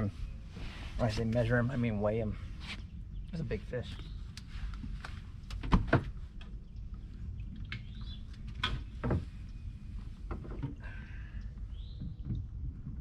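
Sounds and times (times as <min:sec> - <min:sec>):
low rumble: 0:00.0 - 0:13.0
knocks and thumps in boat: 0:04.8 - 0:06.6, 0:07.5 - 0:13.0.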